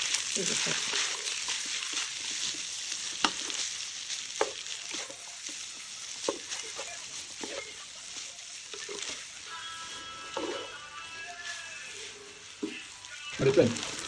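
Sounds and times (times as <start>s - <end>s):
food sizzling in a pan: 0.0s - 14.0s.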